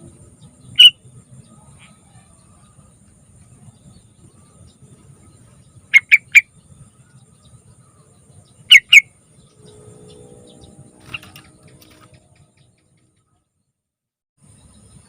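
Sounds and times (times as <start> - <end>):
bulbul calling sharp notes: 0.8 - 1.0, 8.7 - 10.2.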